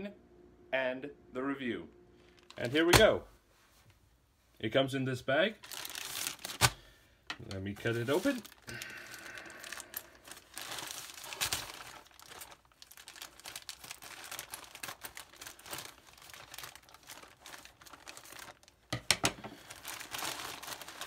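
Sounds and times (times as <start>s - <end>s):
plastic bag crinkling and tearing: 2.2s - 2.9s, 5.6s - 21.0s.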